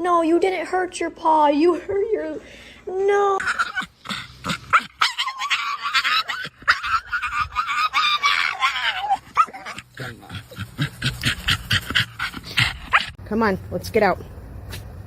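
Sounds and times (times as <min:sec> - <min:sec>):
dog whining and yelping: 0:03.4 - 0:13.2.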